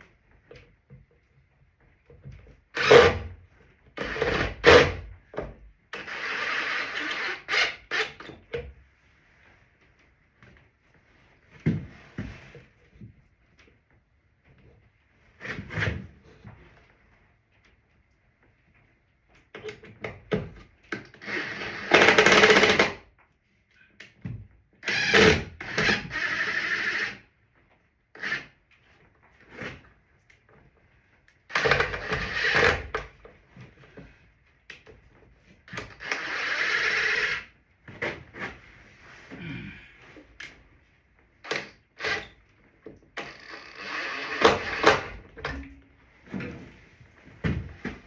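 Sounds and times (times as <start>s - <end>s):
power drill driving screws into wood: 2.8s - 3.3s, 4.0s - 5.1s, 6.0s - 8.2s, 21.2s - 23.0s, 24.8s - 27.2s, 28.2s - 28.5s, 31.5s - 33.1s, 35.7s - 37.5s, 41.4s - 42.4s, 43.2s - 45.2s.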